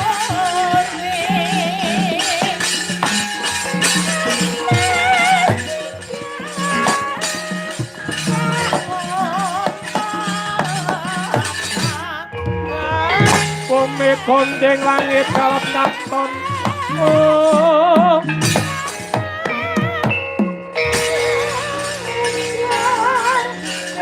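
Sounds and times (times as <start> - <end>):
sharp metallic clatters: 0.0 - 12.2
metallophone and gong tones: 0.0 - 24.0
wavering vocal melody: 0.0 - 24.0.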